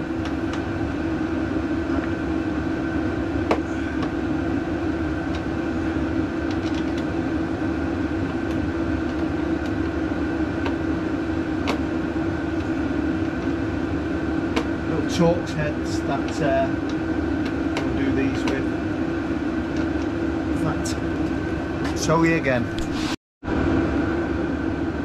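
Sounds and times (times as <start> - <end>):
low mechanical hum: 0.0 - 25.0.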